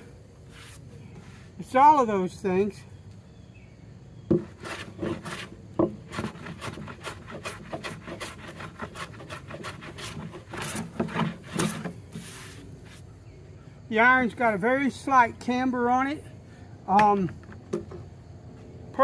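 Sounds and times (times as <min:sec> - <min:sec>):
bench plane shaving wood: 0:04.3 - 0:13.0.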